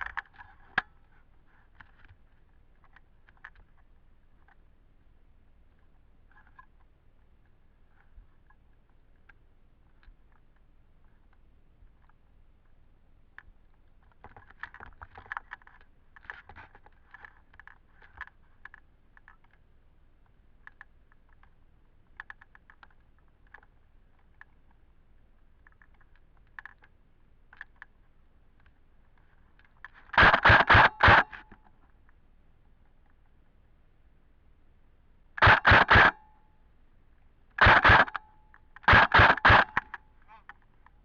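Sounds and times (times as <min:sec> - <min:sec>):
airsoft guns firing: 0:30.2 - 0:31.4, 0:35.4 - 0:36.2, 0:37.6 - 0:38.2, 0:38.8 - 0:40.0.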